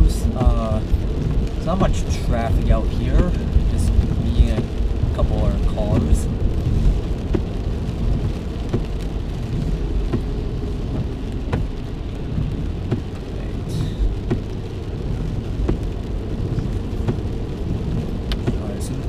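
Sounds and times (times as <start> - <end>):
car driving rumble inside cabin: 0.0 - 19.0
light ticks: 0.2 - 6.3, 15.6 - 17.4, 18.0 - 19.0.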